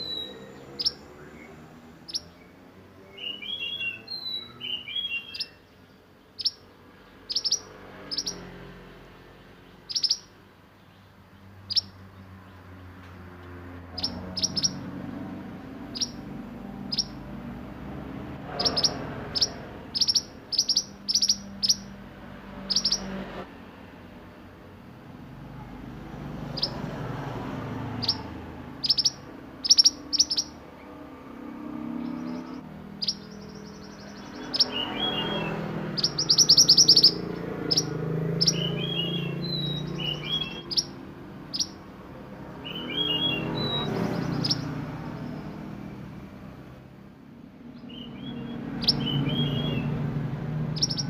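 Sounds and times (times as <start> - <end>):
songbird singing: 0.0 - 23.5, 24.1 - 51.0
songbird rattling trill: 6.3 - 8.5, 9.8 - 10.4, 11.6 - 12.0, 13.9 - 15.0, 15.8 - 17.2, 18.4 - 22.0, 22.6 - 23.2, 26.5 - 26.8, 27.9 - 30.6, 33.0 - 41.8, 42.6 - 45.5, 47.9 - 50.0, 50.7 - 51.0.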